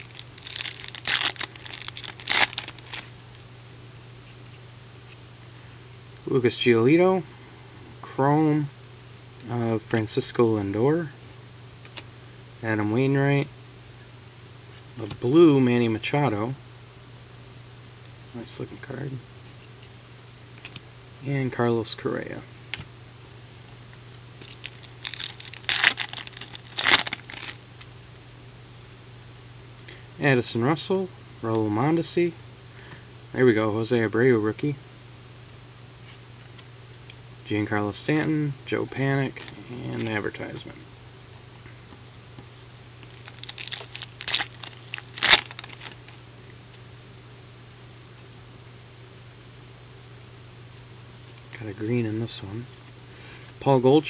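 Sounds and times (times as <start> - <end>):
wrapper crinkling and tearing: 0.0 - 3.1, 24.4 - 27.6, 43.0 - 46.2.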